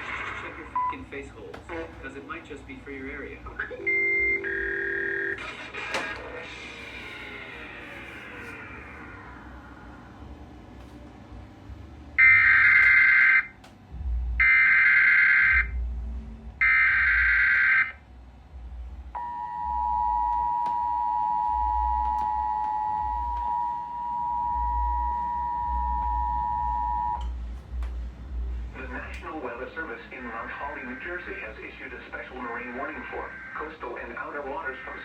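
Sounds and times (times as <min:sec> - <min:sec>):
steady two-tone alert signal: 0:03.6 - 0:05.4, 0:19.2 - 0:27.2.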